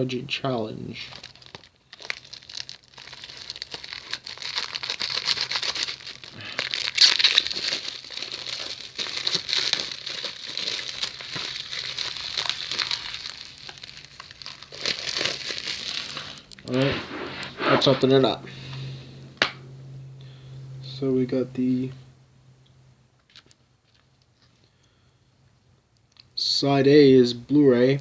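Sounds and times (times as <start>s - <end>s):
plastic shrink-wrap crinkling: 0.9s - 18.1s.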